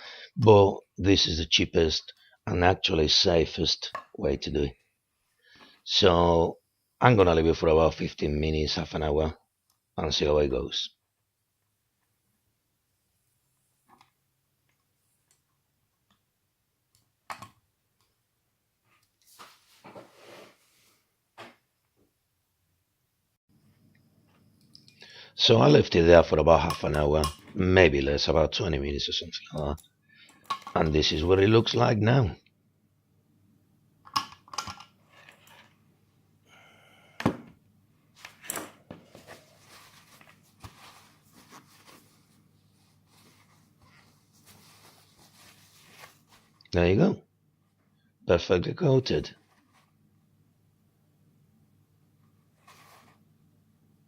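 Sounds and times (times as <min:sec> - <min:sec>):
soft rustling: 0:18.8 - 0:21.1, 0:39.0 - 0:46.7, 0:49.4 - 0:50.0, 0:52.4 - 0:53.3.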